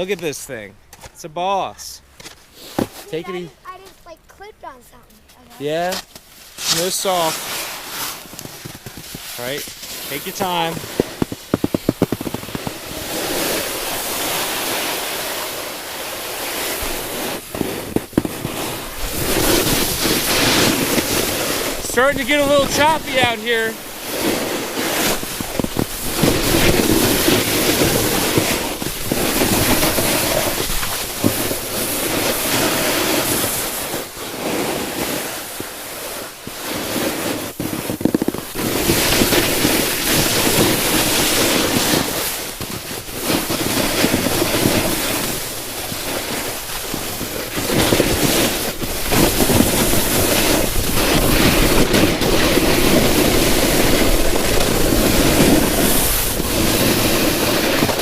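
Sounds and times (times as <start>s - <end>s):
snowboard scraping over icy snow: 5.6s - 58.0s
wind on microphone: 36.5s - 58.0s.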